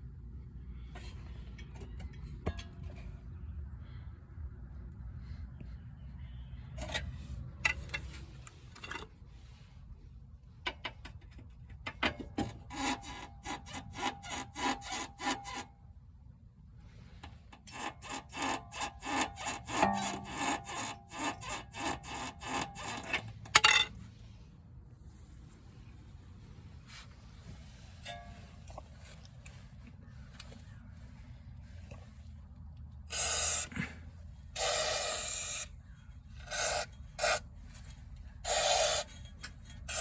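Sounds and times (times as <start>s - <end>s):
hand tool scraping metal: 12.4s - 15.7s, 17.3s - 24.0s, 27.4s - 29.8s, 33.1s - 33.9s, 34.6s - 40.0s.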